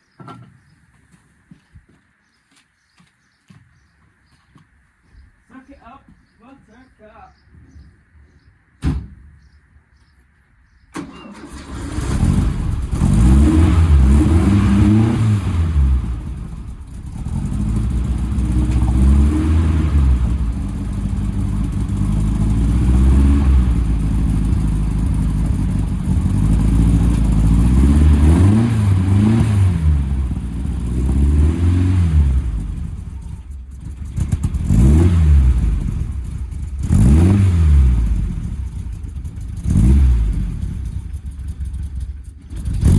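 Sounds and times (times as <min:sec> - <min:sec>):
engine revving: 0:11.0 - 0:42.9.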